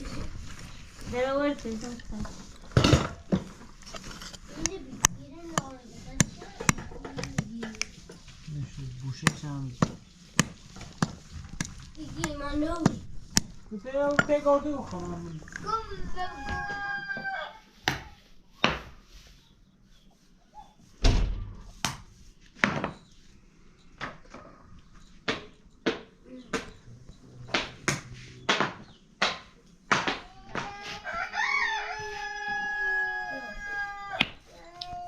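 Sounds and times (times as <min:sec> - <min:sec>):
rooster crowing: 0:16.2 - 0:17.7, 0:30.6 - 0:34.4
sharp knocks: 0:27.4 - 0:30.8.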